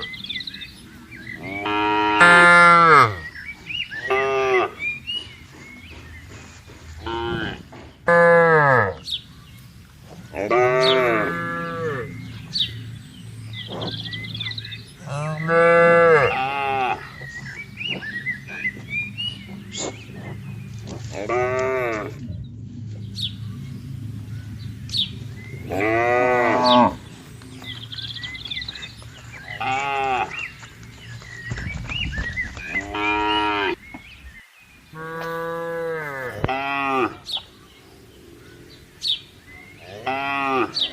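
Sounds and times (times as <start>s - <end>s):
cattle mooing: 1.4s - 3.3s, 4.0s - 4.9s, 7.0s - 9.0s, 10.3s - 12.8s, 13.6s - 22.3s, 25.1s - 27.2s, 29.4s - 30.5s, 32.8s - 33.8s, 35.0s - 37.3s, 39.7s - 40.9s.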